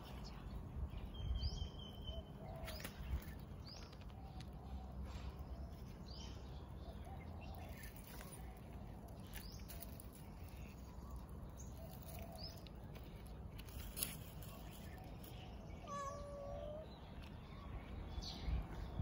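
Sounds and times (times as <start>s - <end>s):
birds chirping: 0.0s - 19.0s.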